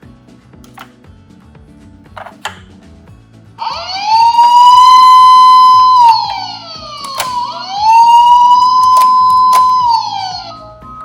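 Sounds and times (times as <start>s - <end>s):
sharp clicks: 0.6s - 0.9s, 3.6s - 10.1s
toy siren wailing: 3.6s - 10.8s.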